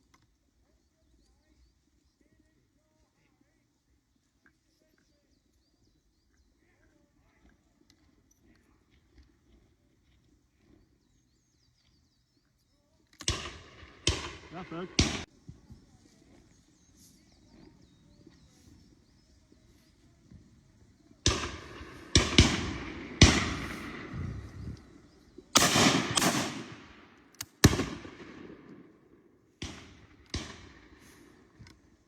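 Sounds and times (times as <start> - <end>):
airsoft gun shots echoing: 13.2 - 15.3, 21.2 - 24.6, 25.5 - 29.0, 29.6 - 31.2.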